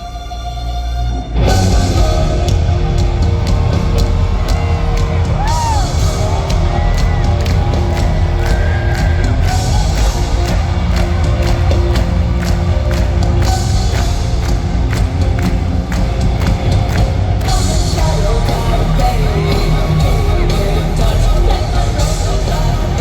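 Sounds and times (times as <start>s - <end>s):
live gothic rock band: 0.0s - 23.0s
crowd whooping and whistling: 1.8s - 17.6s.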